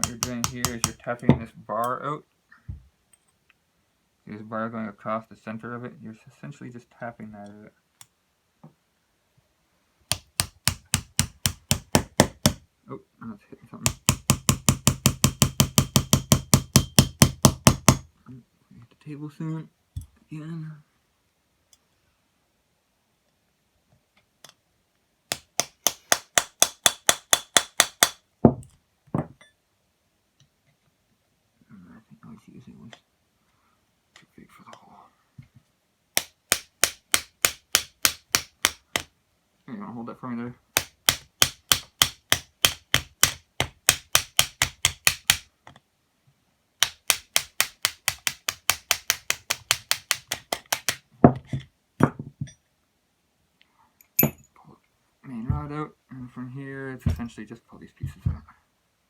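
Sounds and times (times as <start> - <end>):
hammer tapping metal: 0.0 - 1.4, 10.1 - 12.6, 13.9 - 18.0, 25.3 - 28.2, 36.2 - 39.1, 40.8 - 45.4, 46.8 - 51.0
heavy hammer knocks: 0.0 - 1.4.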